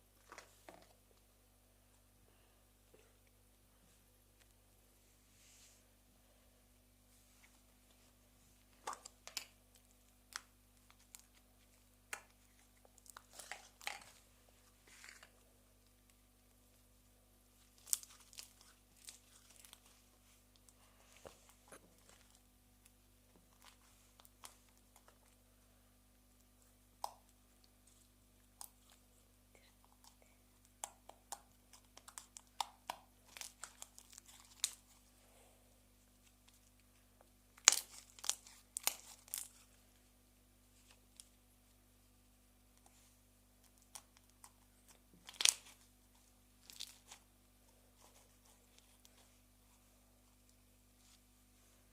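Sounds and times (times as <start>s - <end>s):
faint steady hum: 0.0s - 51.9s
slime crackling and popping: 17.6s - 19.9s, 30.0s - 35.0s, 37.5s - 39.7s, 45.2s - 45.9s, 46.6s - 47.2s.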